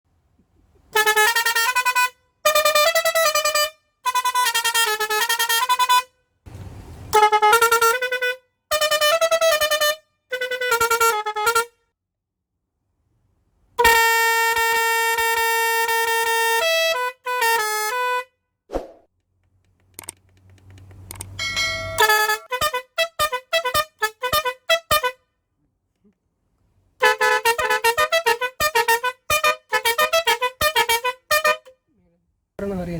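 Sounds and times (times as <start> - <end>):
musical bus horn playing a tune: 0.9 - 6.3, 7.1 - 11.8, 13.8 - 18.4, 21.4 - 25.3, 27.0 - 31.9
brief rush of noise: 6.5 - 7.2, 18.7 - 19.1.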